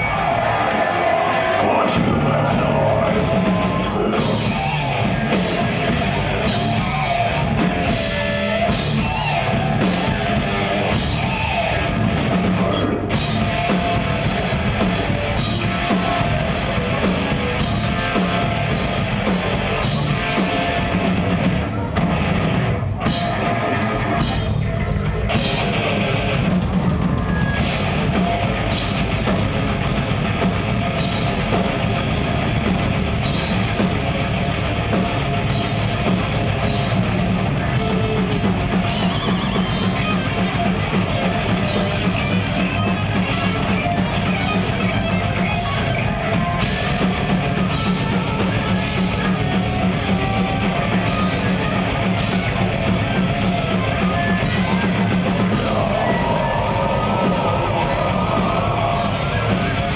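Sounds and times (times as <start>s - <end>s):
death metal band playing: 0.0s - 59.9s.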